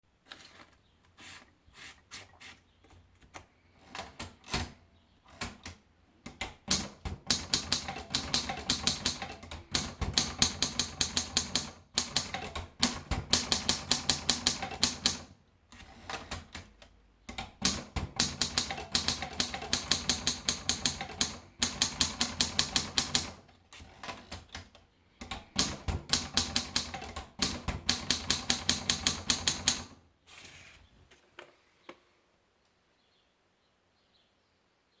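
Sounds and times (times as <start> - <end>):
manual typewriter typing: 3.2 - 30.0.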